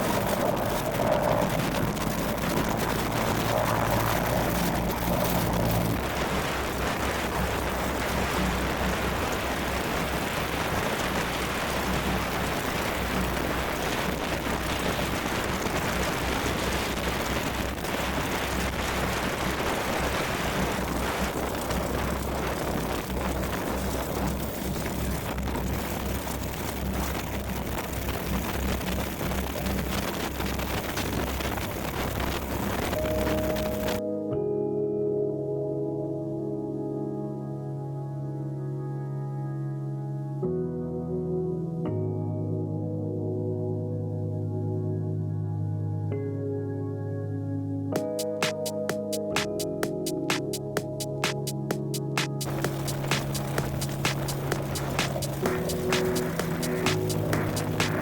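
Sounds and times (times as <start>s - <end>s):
broad rushing noise: 0.0s - 34.0s, 48.0s - 58.0s
propeller plane engines droning: 50.2s - 58.0s.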